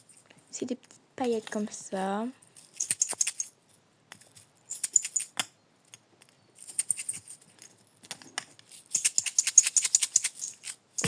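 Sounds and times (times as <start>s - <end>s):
sequins rattling in container: 1.2s - 3.5s, 4.7s - 5.4s, 8.7s - 11.0s.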